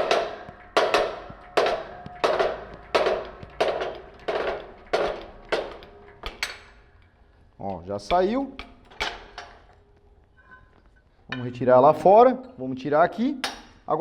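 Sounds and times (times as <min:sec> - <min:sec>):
hammer striking metal tool: 0:00.0 - 0:07.2, 0:08.0 - 0:09.8, 0:13.4 - 0:13.9.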